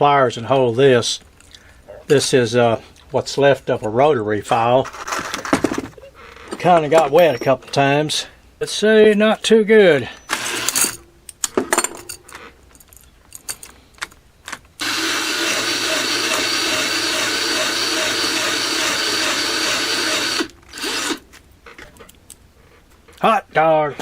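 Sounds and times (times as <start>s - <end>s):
electric drill running: 10.3s - 10.9s, 14.8s - 21.2s.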